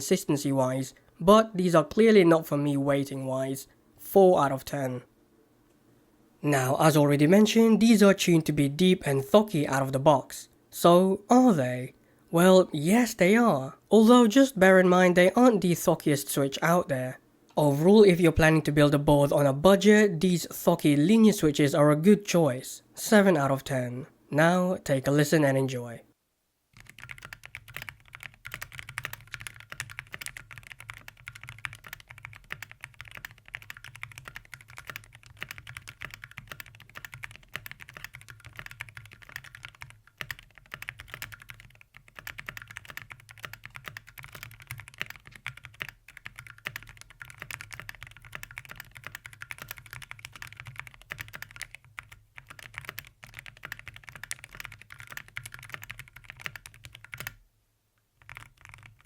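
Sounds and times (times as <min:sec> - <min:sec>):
mechanical keyboard typing: 0:26.8 - 0:57.4, 0:58.2 - 0:59.0.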